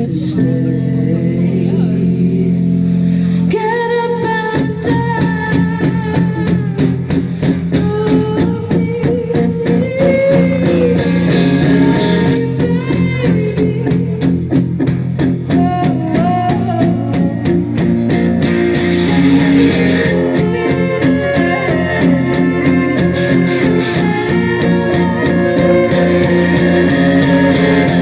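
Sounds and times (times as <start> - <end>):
bending lead guitar line: 0.0 - 28.0
rock band instrumental: 4.5 - 28.0.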